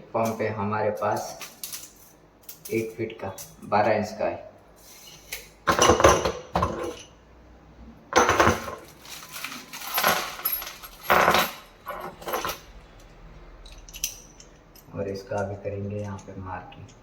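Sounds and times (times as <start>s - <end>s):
small metal parts clinking: 1.0s - 3.7s, 8.2s - 17.0s.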